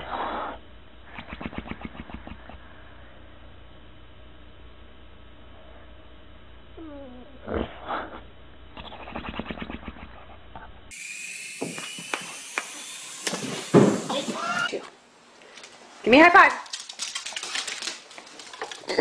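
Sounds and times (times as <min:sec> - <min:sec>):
pet animal whining: 0:08.8 - 0:10.4, 0:14.1 - 0:14.8.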